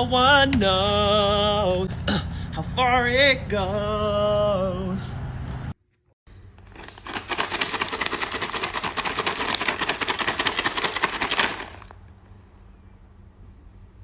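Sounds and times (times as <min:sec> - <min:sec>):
fast rattling clicks: 0:06.8 - 0:12.0.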